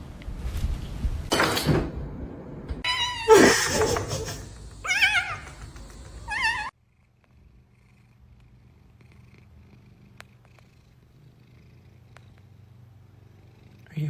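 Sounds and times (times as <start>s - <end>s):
cat meowing: 2.8s - 4.0s, 4.8s - 5.6s, 6.2s - 6.7s
cat purring: 5.4s - 14.0s.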